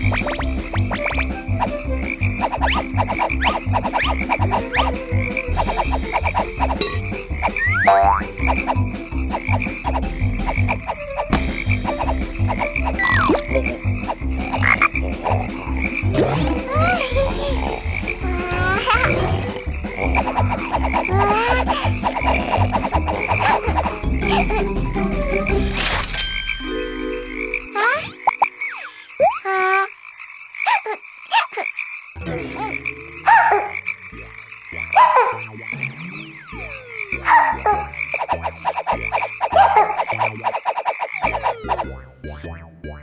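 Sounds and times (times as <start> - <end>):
sliding pitched calls: 0.0 - 26.0, 32.4 - 41.9
cartoon frog croaking: 2.0 - 25.9, 27.7 - 42.8
quick upward chirps: 35.7 - 42.0.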